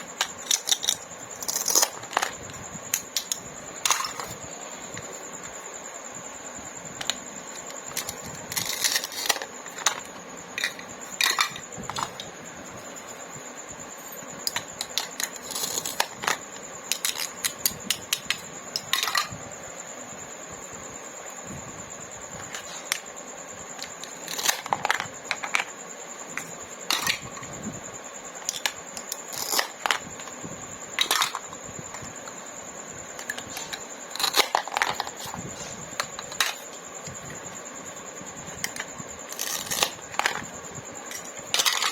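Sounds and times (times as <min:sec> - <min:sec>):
plastic pieces clicking and tapping: 0:00.1 - 0:04.4, 0:14.4 - 0:19.3, 0:28.4 - 0:30.3, 0:31.0 - 0:32.1.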